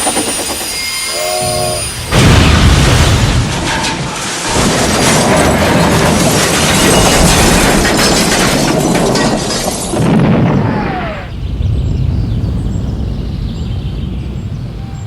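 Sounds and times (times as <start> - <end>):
train crash with breaking clatter: 1.8 - 11.3.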